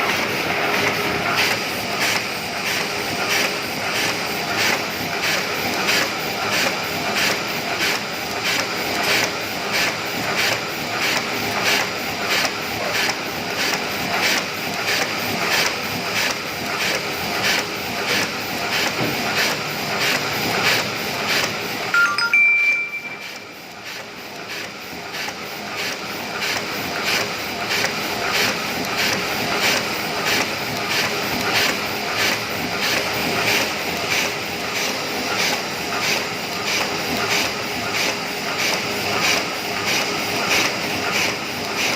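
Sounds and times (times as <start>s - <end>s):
printing press clattering: 0.0s - 21.9s, 23.3s - 41.9s
brief high tone: 21.9s - 23.5s.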